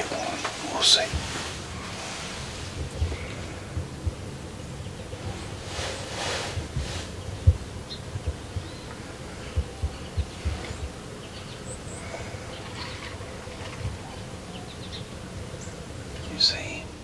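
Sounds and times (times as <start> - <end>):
soft low thumps and knocks: 0.0 - 1.8, 2.4 - 5.5, 6.6 - 11.0.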